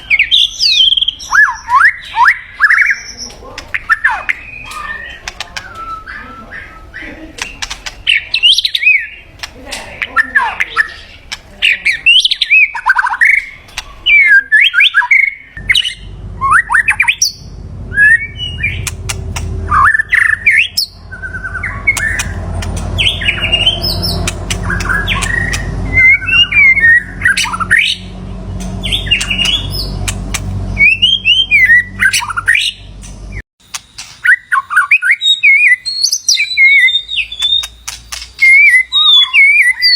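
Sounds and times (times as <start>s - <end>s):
bird singing whistled phrases: 0.0s - 3.2s, 3.8s - 9.2s, 12.1s - 18.9s, 19.7s - 22.4s, 23.0s - 28.1s, 30.8s - 32.8s, 34.2s - 39.9s
low rumble: 15.6s - 33.4s.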